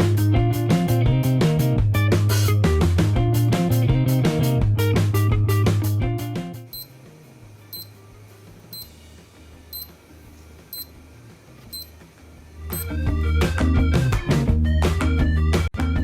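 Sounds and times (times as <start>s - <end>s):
short high electronic beeps: 7.8s - 8.0s.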